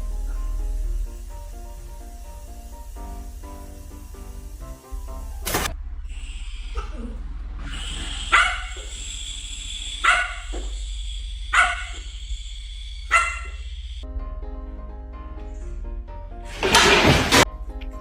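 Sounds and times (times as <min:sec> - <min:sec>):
background music: 0:00.0 - 0:05.9, 0:14.0 - 0:18.0
dog barking: 0:08.0 - 0:09.0, 0:10.0 - 0:10.7, 0:11.5 - 0:12.2, 0:13.0 - 0:13.7.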